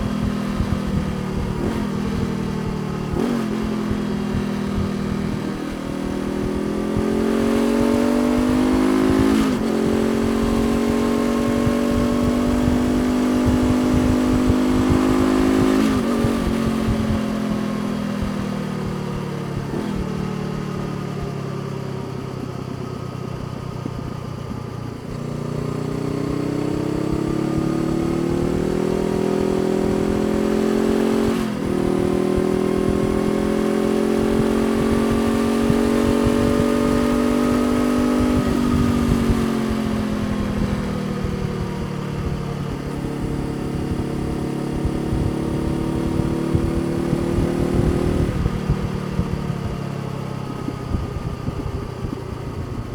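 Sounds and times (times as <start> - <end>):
motorcycle engine revving: 0.0 - 52.9.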